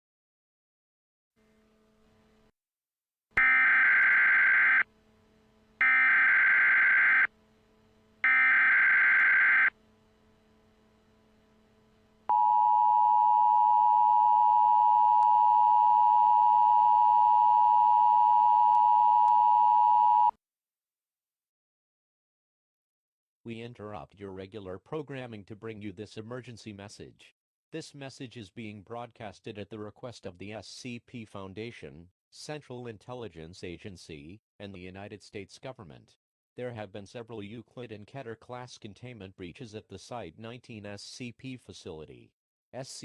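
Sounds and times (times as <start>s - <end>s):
two-tone attention signal: 3.4s - 4.8s, 5.8s - 7.3s.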